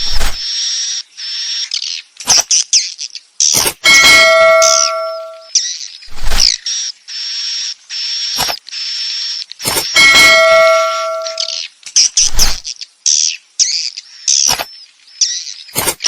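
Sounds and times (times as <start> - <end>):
bell-like ding: 3.6 - 5.5, 9.8 - 11.6.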